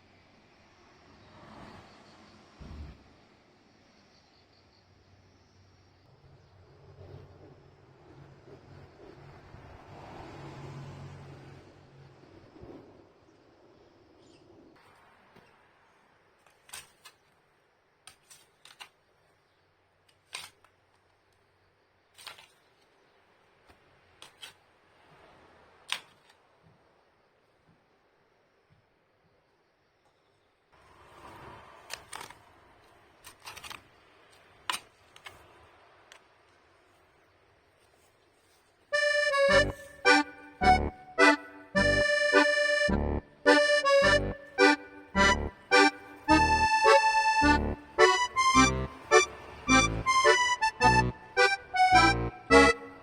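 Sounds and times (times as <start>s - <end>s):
accordion music: 38.9s - 53.0s.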